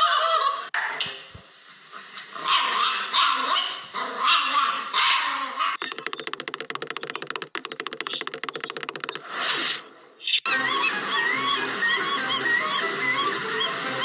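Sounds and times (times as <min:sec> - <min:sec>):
dog yapping: 0:02.5 - 0:05.8
fast even clicking: 0:05.8 - 0:09.4.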